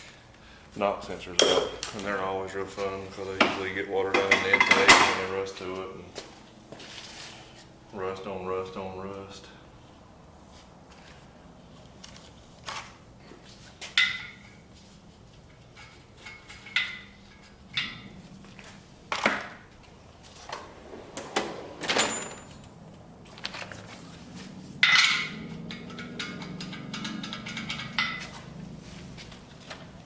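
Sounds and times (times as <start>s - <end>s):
metal tools knocking on engine block: 3.4s - 5.3s, 13.9s - 14.6s, 15.8s - 18.2s, 24.8s - 28.6s.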